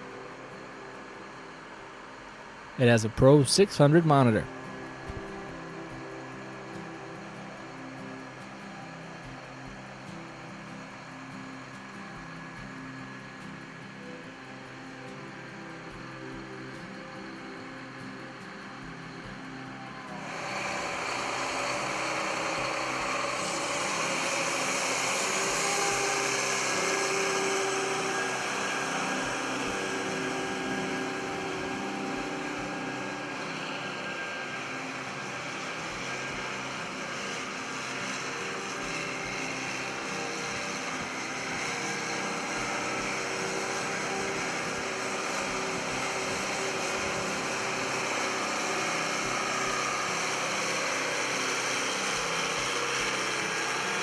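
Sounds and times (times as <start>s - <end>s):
diesel tractor engine idling: 20.1s - 54.0s.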